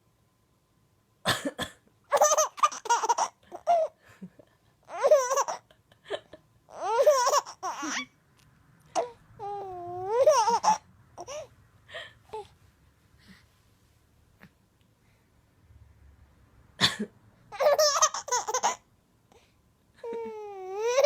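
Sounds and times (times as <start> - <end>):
woman coughing: 1.3 - 1.8, 16.8 - 17.1
baby laughing: 2.1 - 4.0, 4.8 - 8.1, 9.0 - 11.5, 17.5 - 18.8, 20.0 - 21.0.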